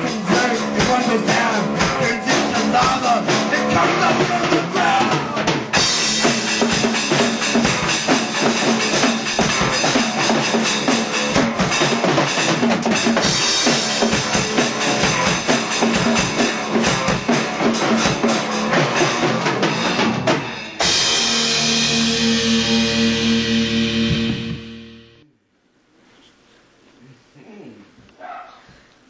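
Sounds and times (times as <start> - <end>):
drum kit beat: 0.0 - 25.2
instrumental rock music: 0.0 - 25.2
held ringing chord: 20.8 - 25.2.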